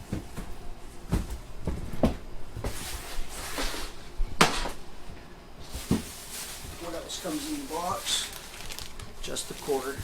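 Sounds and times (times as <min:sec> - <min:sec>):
rustling: 0:05.7 - 0:10.0.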